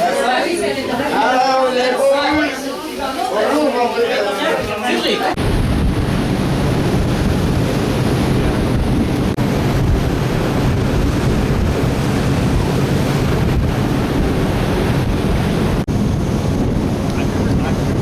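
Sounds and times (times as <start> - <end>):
strong wind buffeting microphone: 4.6 - 18.0.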